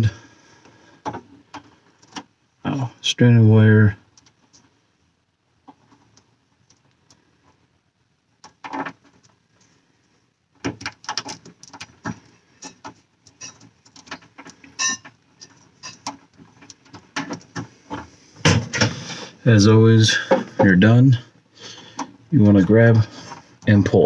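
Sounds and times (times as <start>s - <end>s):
wires clicking and rattling: 4.1s - 4.8s, 5.6s - 7.6s, 8.3s - 9.7s, 10.5s - 19.2s.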